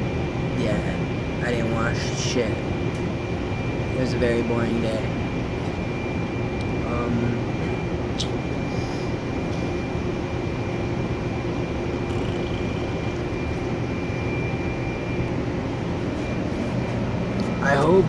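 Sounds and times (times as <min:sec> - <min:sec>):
faint high whine: 0:00.0 - 0:18.0
low mechanical rumble: 0:00.0 - 0:18.0.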